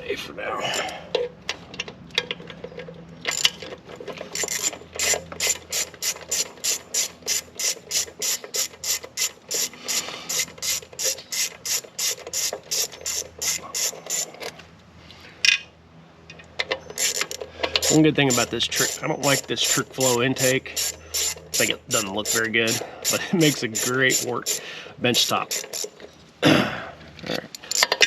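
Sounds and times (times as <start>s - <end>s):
socket ratchet clicking: 4.3s - 14.6s, 16.6s - 24.6s, 25.3s - 26.0s.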